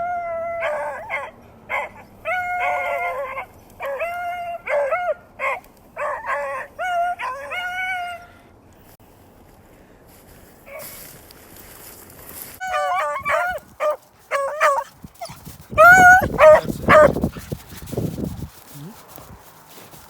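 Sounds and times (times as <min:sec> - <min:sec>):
dogs barking: 0:12.6 - 0:17.5
hounds baying: 0:12.6 - 0:17.6.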